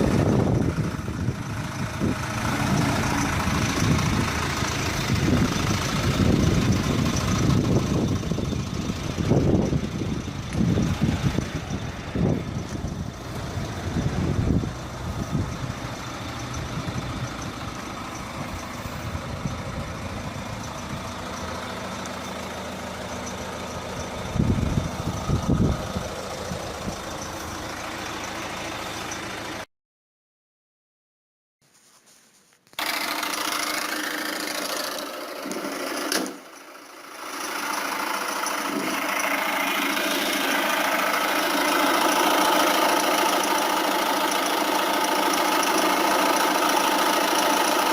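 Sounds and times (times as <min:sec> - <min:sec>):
diesel engine running: 0:00.0 - 0:29.7, 0:32.7 - 0:47.9.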